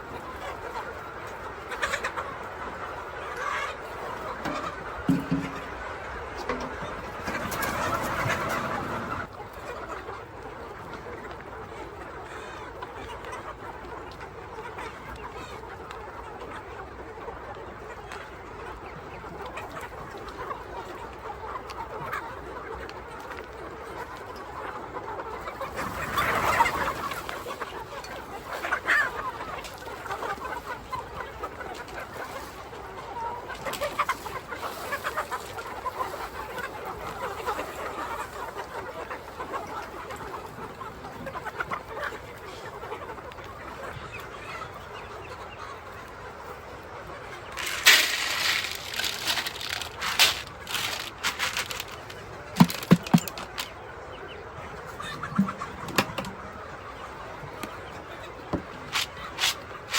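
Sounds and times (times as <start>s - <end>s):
chickens clucking: 0.0s - 59.9s.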